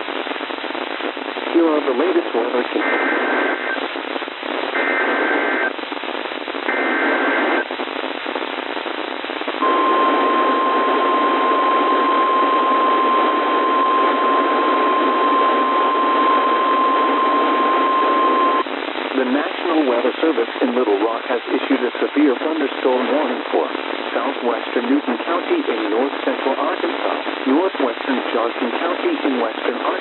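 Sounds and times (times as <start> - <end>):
radio static hiss: 0.0 - 30.0
data-header tone bursts: 9.6 - 18.7
steady warning alarm tone: 9.6 - 18.7.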